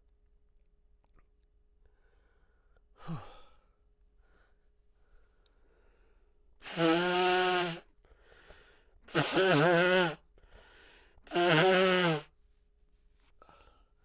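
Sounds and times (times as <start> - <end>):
person sighing: 3.0 - 3.5
faint breaths: 8.0 - 9.0, 10.4 - 11.3.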